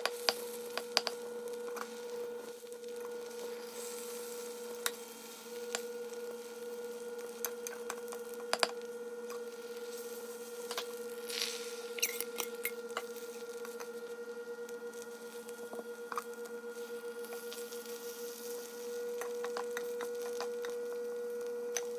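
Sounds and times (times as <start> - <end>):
kitchen appliance hum: 0.0 - 21.9
sizzling in a frying pan: 0.0 - 21.9.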